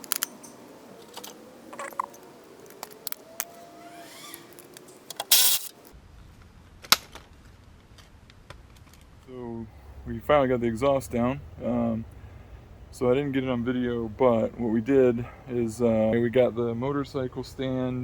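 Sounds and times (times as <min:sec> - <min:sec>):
hand tools clinking and rattling: 0:00.0 - 0:03.1.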